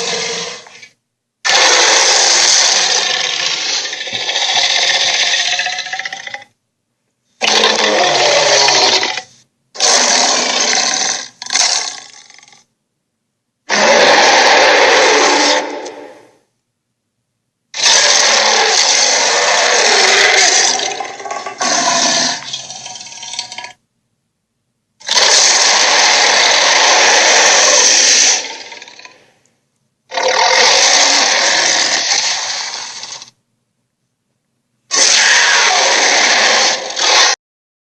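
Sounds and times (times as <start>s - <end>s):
dinosaur roars: 0.0s - 0.8s, 1.5s - 6.5s, 7.4s - 12.6s, 13.7s - 16.4s, 17.8s - 23.1s, 25.1s - 29.3s, 30.1s - 33.3s, 34.9s - 37.4s.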